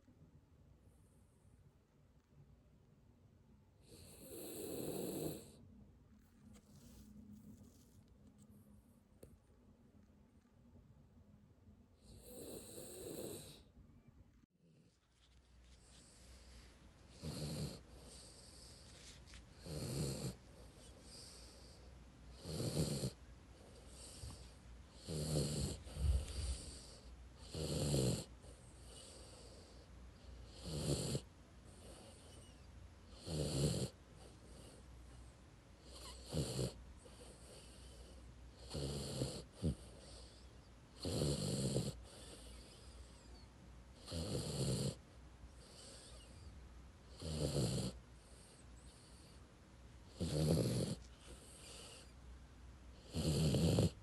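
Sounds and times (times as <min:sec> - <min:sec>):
dog snoring: 0:03.8 - 0:05.6, 0:12.0 - 0:13.7, 0:15.7 - 0:49.4, 0:50.0 - 0:52.2, 0:53.0 - 0:54.0.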